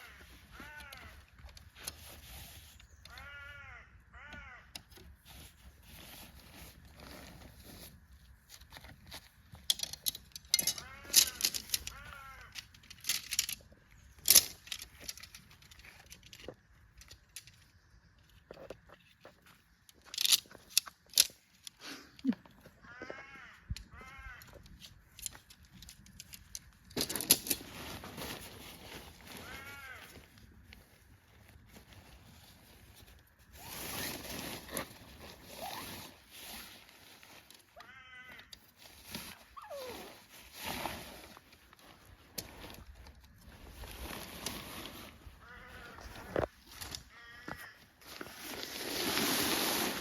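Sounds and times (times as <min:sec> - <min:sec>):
crows cawing: 0:00.0 - 0:01.2, 0:03.1 - 0:04.8, 0:10.7 - 0:12.6, 0:22.8 - 0:24.6, 0:29.4 - 0:30.2, 0:37.8 - 0:38.6, 0:45.4 - 0:46.3, 0:47.1 - 0:47.9
tent poles clicking and jangling: 0:00.0 - 0:03.4, 0:04.4 - 0:50.0.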